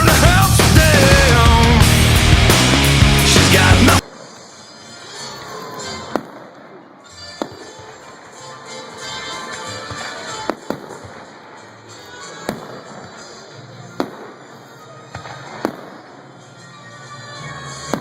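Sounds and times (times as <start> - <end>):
background music: 0.0 - 4.0.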